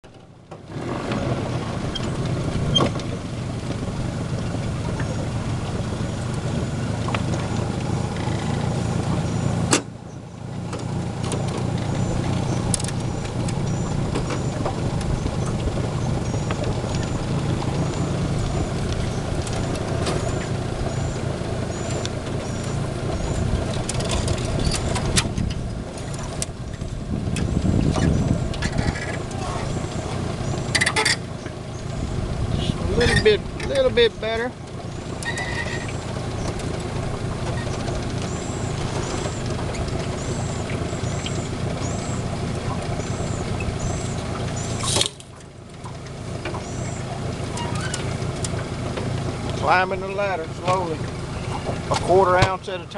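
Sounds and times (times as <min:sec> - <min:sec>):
engine humming: 0:00.0 - 0:52.9
sharp click: 0:44.8 - 0:45.3.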